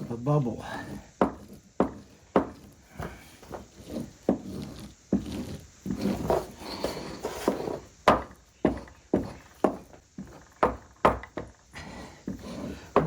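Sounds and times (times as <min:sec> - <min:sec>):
hand tools knocking on wood: 0:00.7 - 0:05.3, 0:07.2 - 0:13.0.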